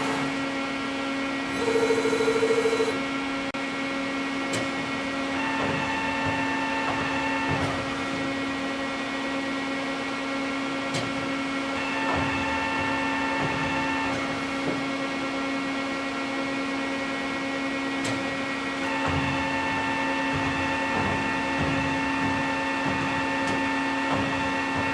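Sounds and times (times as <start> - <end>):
higher machine whine: 0.0 - 10.6
lathe running hum: 0.0 - 24.9.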